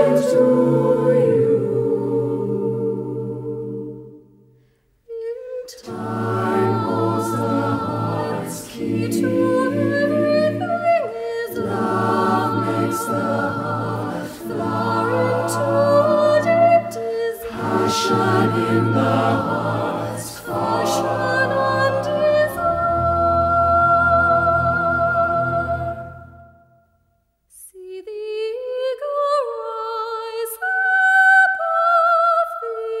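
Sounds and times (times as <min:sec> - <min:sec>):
choir singing slow phrases: 0:00.0 - 0:26.8.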